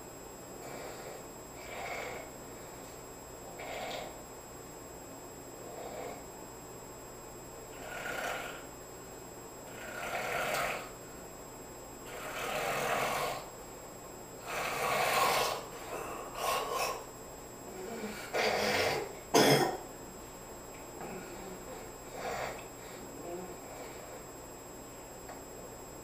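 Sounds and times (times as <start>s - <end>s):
person snoring: 7.7s - 8.7s, 9.7s - 10.9s, 12.1s - 13.5s, 14.4s - 17.0s.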